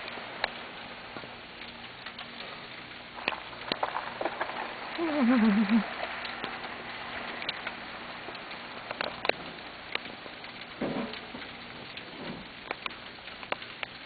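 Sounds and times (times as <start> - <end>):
icy tree branches cracking: 0.0 - 5.0
wavering voice-like sound: 5.0 - 5.9.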